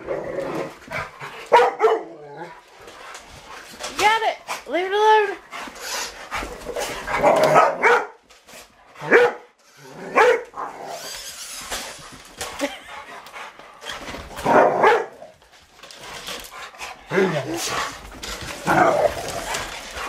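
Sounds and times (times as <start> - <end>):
dogs barking: 1.4 - 2.2, 7.2 - 8.2, 9.0 - 9.5, 10.1 - 10.7, 14.4 - 15.2.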